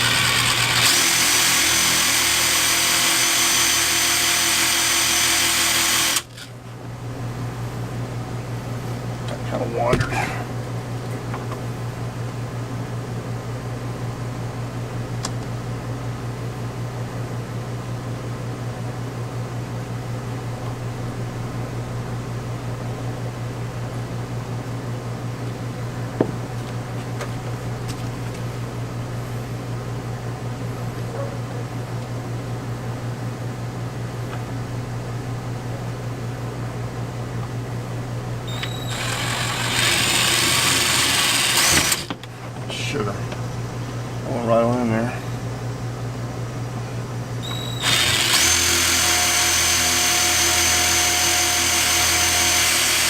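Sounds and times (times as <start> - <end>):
power drill drilling: 0.0 - 6.5, 38.5 - 42.1, 47.4 - 53.0
low mechanical hum: 0.0 - 53.0.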